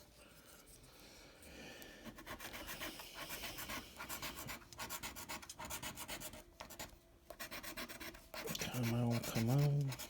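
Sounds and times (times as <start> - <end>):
scratch card being scratched: 2.2 - 10.0.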